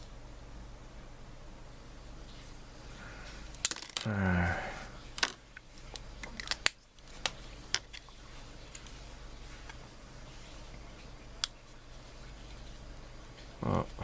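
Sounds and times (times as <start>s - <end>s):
small parts and tools clicking: 3.5s - 4.1s
man humming: 4.0s - 5.0s, 13.6s - 14.0s.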